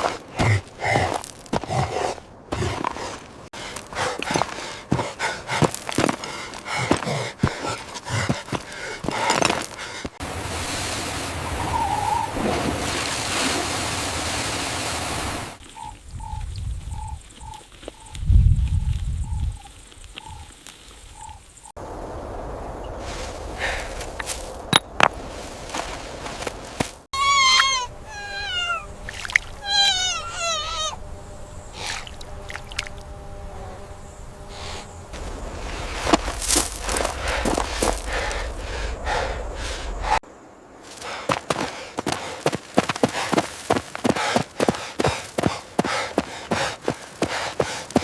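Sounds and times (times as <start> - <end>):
animal crying out: 27.2 - 31.0
repeated animal calls: 27.2 - 35.1
steady rushing noise: 32.9 - 48.0
low rumble: 34.9 - 40.2.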